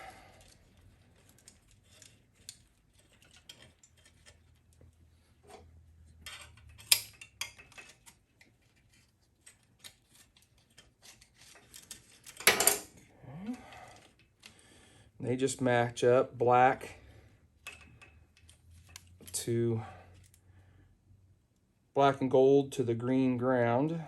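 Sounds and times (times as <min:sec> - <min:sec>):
wiring harness clicks and rustles: 0:00.3 - 0:14.7, 0:17.6 - 0:19.5.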